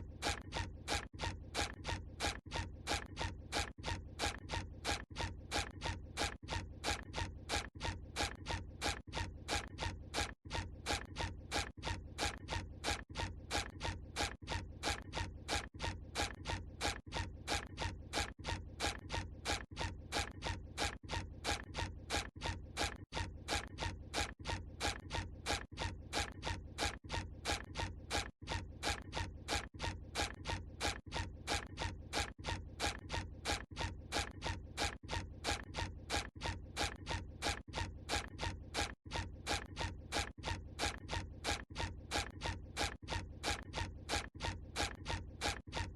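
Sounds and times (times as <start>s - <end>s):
cartoon footsteps: 18.9s - 45.9s.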